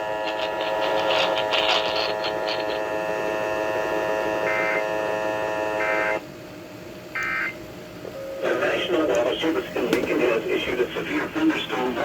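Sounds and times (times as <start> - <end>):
steady electrical hum: 0.0 - 12.0
warbling data bursts: 0.2 - 3.2.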